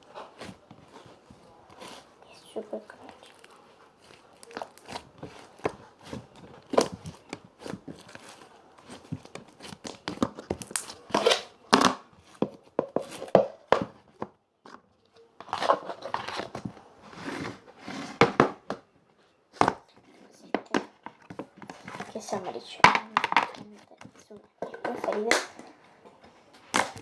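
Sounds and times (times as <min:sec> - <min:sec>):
crunchy slime crackling and popping: 0:01.7 - 0:12.3.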